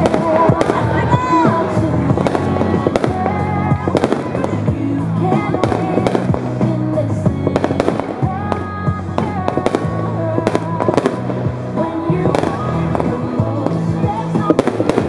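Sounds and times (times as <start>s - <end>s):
fireworks bangs and crackles: 0.0s - 15.0s
music playing: 0.0s - 15.0s.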